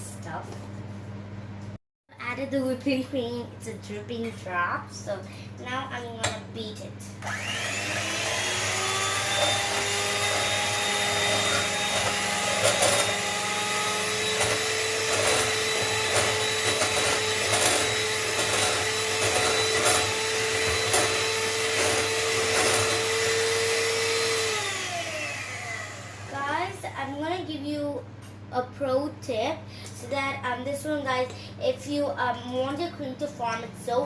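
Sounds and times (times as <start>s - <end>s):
mixer clicks: 7.2s - 26.0s
electric mixer running: 7.2s - 26.8s.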